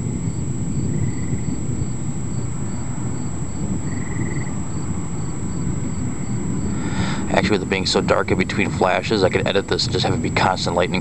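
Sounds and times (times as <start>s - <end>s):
crickets chirping: 0.0s - 11.0s
steady low rumbling noise: 0.0s - 11.0s.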